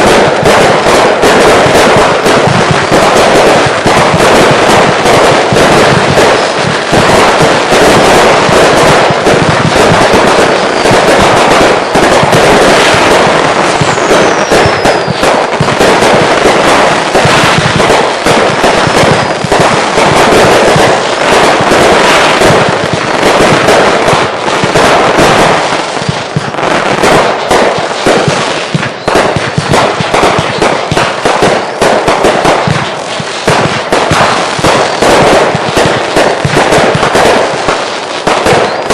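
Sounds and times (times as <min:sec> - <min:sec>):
fireworks bangs and crackling: 0:00.0 - 0:38.9
falling firework whistles: 0:08.1 - 0:16.6, 0:28.7 - 0:32.1, 0:38.4 - 0:38.9.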